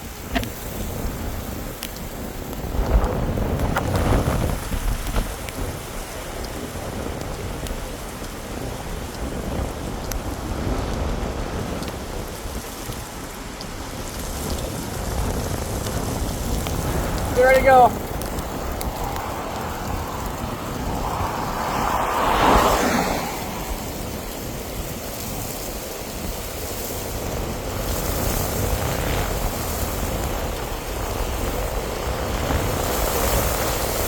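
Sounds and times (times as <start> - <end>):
wind noise: 0.0 - 34.0
tornado roar: 14.1 - 34.0
deep rumble: 18.0 - 24.7.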